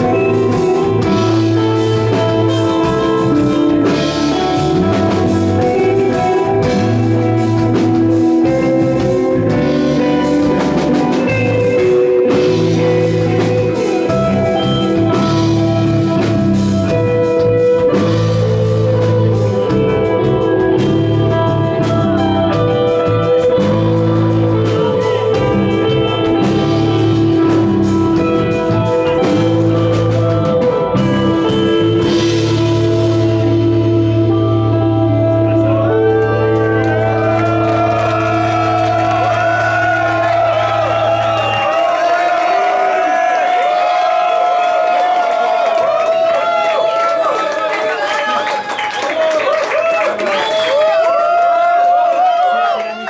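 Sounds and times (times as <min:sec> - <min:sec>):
repeating bass line: 0:00.0 - 0:41.8
electric guitar sustained notes: 0:00.0 - 0:43.8
drum kit steady beat: 0:00.0 - 0:46.6.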